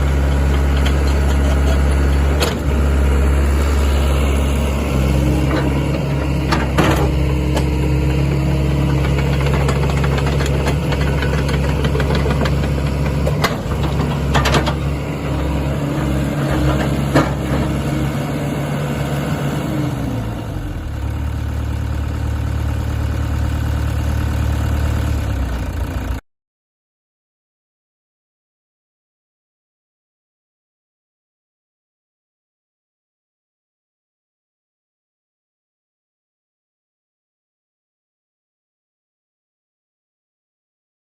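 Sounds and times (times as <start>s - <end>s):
excavator diesel engine: 0.0s - 26.2s.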